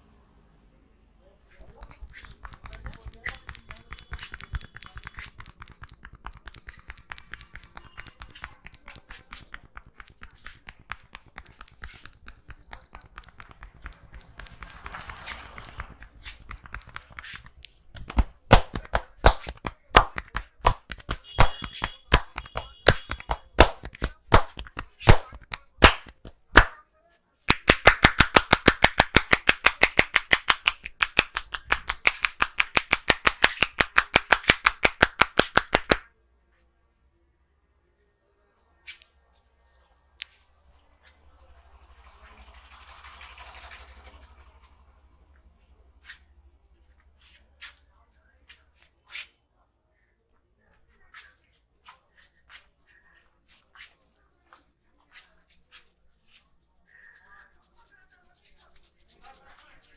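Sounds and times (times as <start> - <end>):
faint rapid tapping on head: 1.6 - 26.8, 27.5 - 36.1, 55.0 - 59.9
fast hollow claps: 1.6 - 26.8, 27.5 - 36.1, 56.8 - 59.9
loud sharp slaps: 1.7 - 26.8, 27.5 - 36.1.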